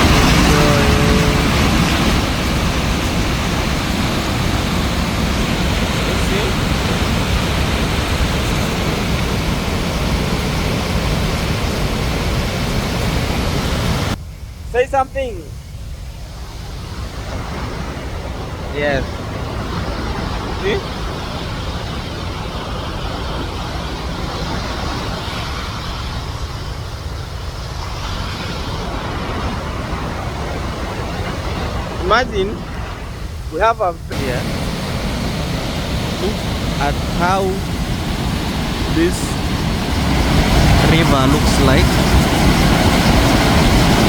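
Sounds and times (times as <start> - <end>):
waterfall rushing: 0.0 - 14.2, 27.2 - 44.0.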